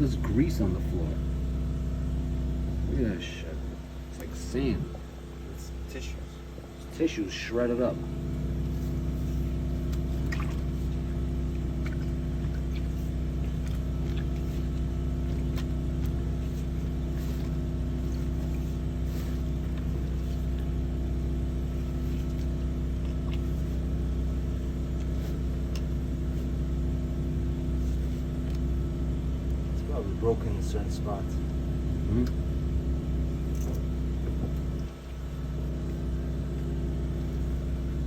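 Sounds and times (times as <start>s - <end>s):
engine running steadily: 0.0s - 38.0s.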